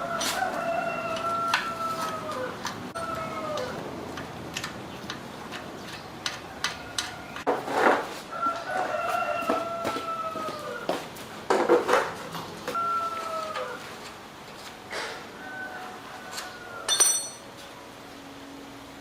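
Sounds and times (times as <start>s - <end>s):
rooster crowing: 0.0s - 3.8s, 8.3s - 11.0s, 12.7s - 14.0s, 15.2s - 17.3s.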